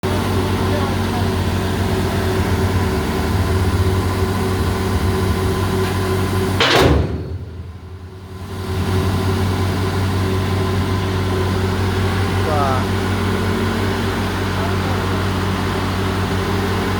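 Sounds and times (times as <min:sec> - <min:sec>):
excavator engine humming: 0:00.0 - 0:16.9
sharp loud knock: 0:06.6 - 0:07.8.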